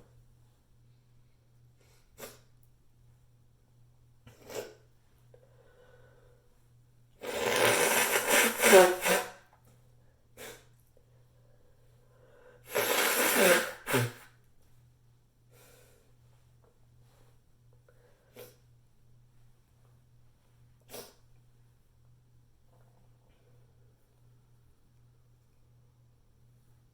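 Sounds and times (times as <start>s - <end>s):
person blowing nose: 7.2s - 9.5s, 12.6s - 14.4s, 20.9s - 21.2s.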